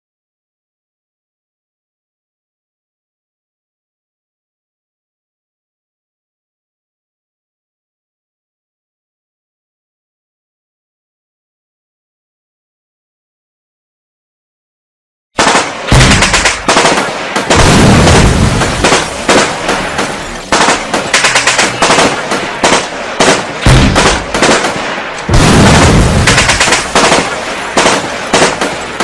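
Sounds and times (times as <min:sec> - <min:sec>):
rapid automatic gunfire: 0:15.4 - 0:29.0
heavy booms: 0:15.8 - 0:29.0.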